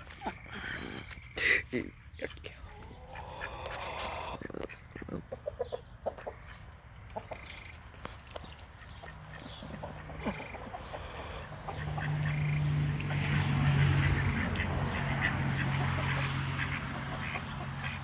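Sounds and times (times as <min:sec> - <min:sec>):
chickens clucking: 0:00.0 - 0:18.0.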